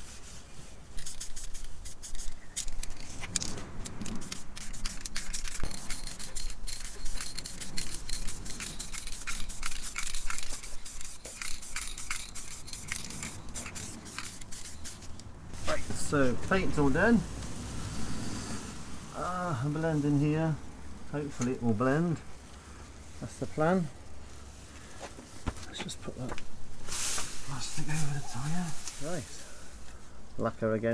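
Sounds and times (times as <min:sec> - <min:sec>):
aerosol spray can hissing: 0:01.0 - 0:02.4, 0:04.1 - 0:15.1
spray can clicks: 0:04.1 - 0:15.0.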